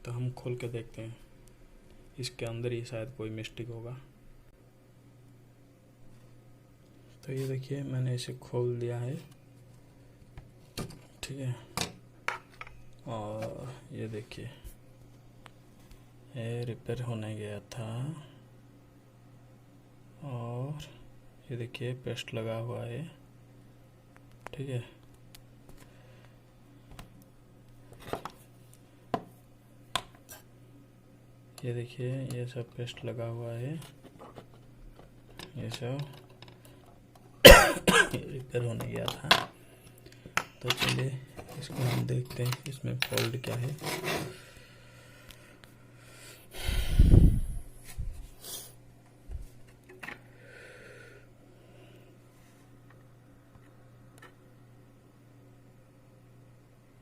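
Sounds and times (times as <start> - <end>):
exhale against microphone: 46.0 - 47.7.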